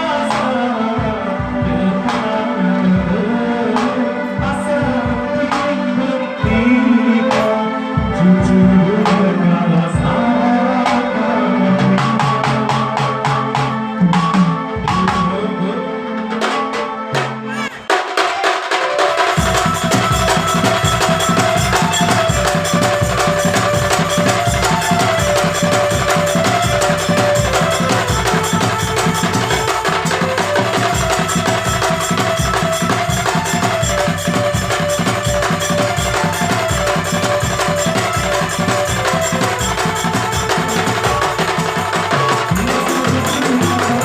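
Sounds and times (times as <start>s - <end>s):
knocking percussion beat: 11.8s - 15.5s, 16.4s - 44.0s.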